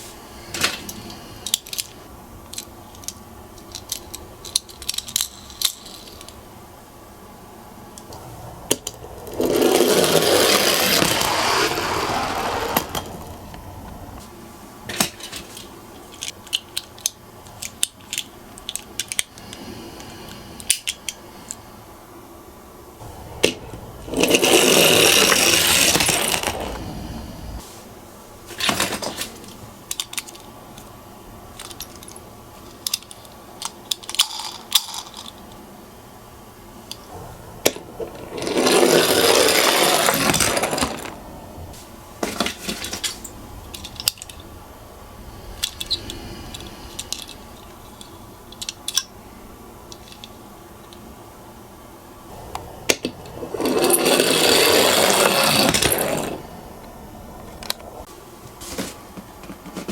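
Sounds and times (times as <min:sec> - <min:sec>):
toy cars clicking and clacking: 0:00.5 - 0:06.4, 0:08.0 - 0:13.2, 0:14.9 - 0:19.6, 0:23.4 - 0:26.8, 0:28.6 - 0:30.9, 0:31.5 - 0:35.6, 0:37.6 - 0:41.2, 0:42.2 - 0:44.5, 0:45.5 - 0:49.1, 0:49.9 - 0:51.0, 0:52.9 - 0:56.4
toy cars rolling rattle: 0:00.5 - 0:06.4, 0:08.0 - 0:13.5, 0:14.9 - 0:19.5, 0:23.4 - 0:27.0, 0:28.5 - 0:30.9, 0:31.5 - 0:35.6, 0:36.9 - 0:41.2, 0:42.2 - 0:44.6, 0:45.4 - 0:49.1, 0:49.9 - 0:51.0, 0:52.5 - 0:56.5.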